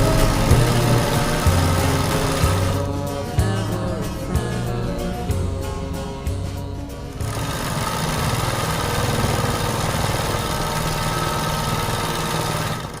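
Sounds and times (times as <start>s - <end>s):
small machine humming: 0.0s - 2.9s, 7.1s - 13.0s
music: 0.0s - 13.0s.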